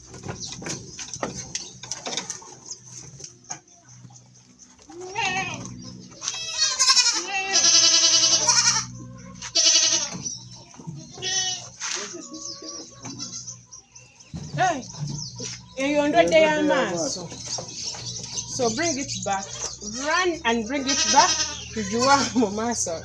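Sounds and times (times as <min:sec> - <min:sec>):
goats bleating: 0:04.9 - 0:10.4, 0:11.1 - 0:13.5, 0:19.8 - 0:23.0.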